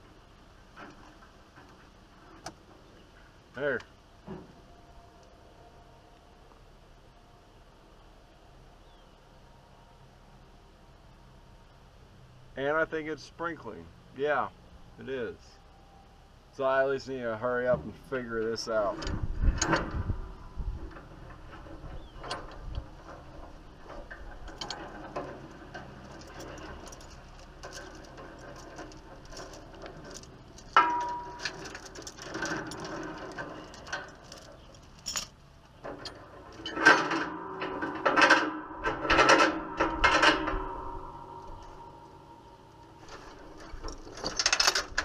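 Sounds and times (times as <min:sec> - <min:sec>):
metal tools clanking: 0:18.6 - 0:45.0.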